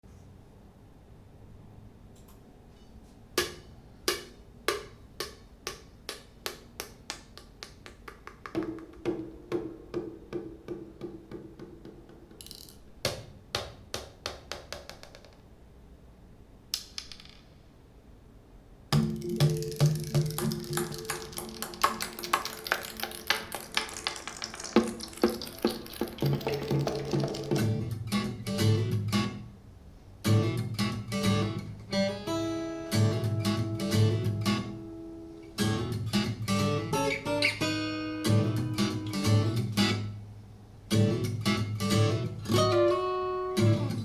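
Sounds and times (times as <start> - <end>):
woodblock-like percussive clicks: 4.1 - 12.8, 18.9 - 27.7.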